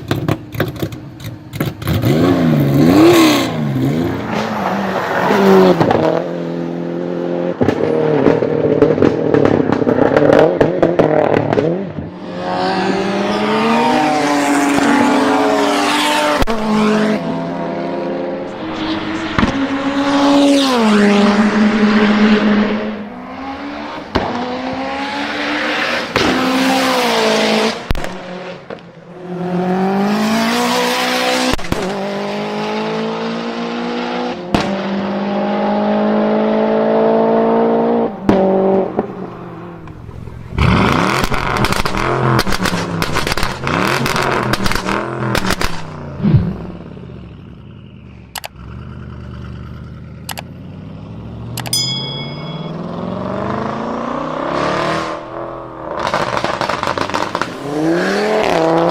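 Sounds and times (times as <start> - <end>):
exhaust pops and crackles: 0.0 - 2.0, 7.6 - 12.1, 39.8 - 46.6, 55.9 - 57.6
performance car engine revving: 0.1 - 51.7, 52.6 - 58.9.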